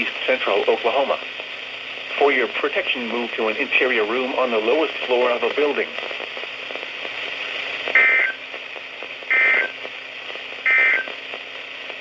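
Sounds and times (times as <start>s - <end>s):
radio hiss: 0.0s - 12.0s
data tone bursts: 8.0s - 8.4s, 9.3s - 9.8s, 10.7s - 11.2s.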